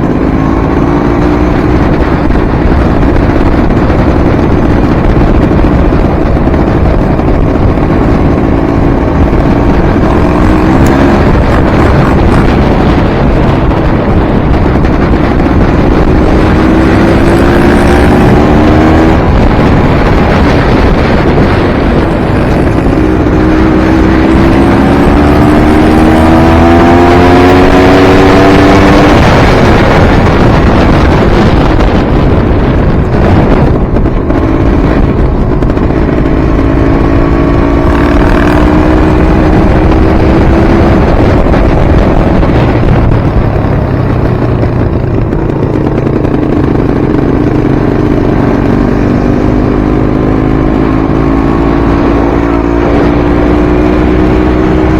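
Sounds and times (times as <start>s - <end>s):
dirt bike engine revving: 6.6s - 32.1s.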